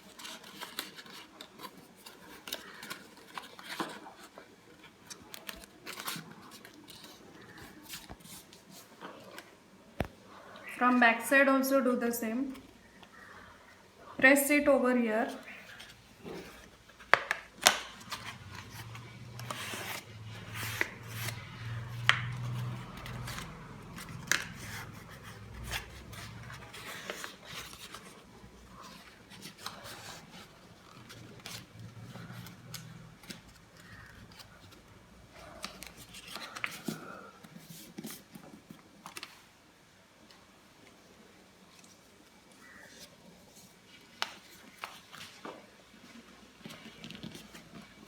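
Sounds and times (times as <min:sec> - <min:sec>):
paper rustling and crinkling: 0:00.0 - 0:10.7, 0:15.2 - 0:48.0
paper fold snaps: 0:15.3 - 0:39.5, 0:41.7 - 0:48.0.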